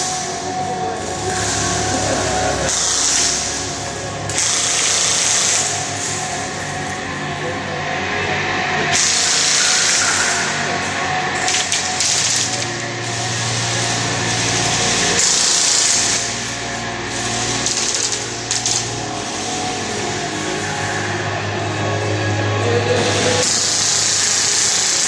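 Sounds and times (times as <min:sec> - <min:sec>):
airsoft guns full-auto bursts: 0:08.9 - 0:10.4, 0:11.4 - 0:12.7, 0:23.4 - 0:25.0.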